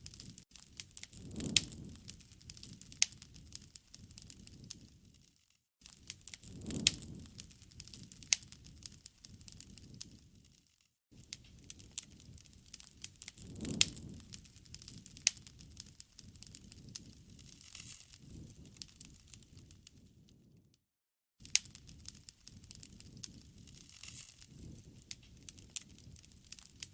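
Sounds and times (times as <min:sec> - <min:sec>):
campfire crackling and popping: 0:00.0 - 0:05.2, 0:05.8 - 0:10.6, 0:11.2 - 0:20.5, 0:21.4 - 0:26.9
low rumble of flames: 0:00.0 - 0:05.2, 0:05.8 - 0:10.6, 0:11.2 - 0:20.8, 0:21.4 - 0:26.9.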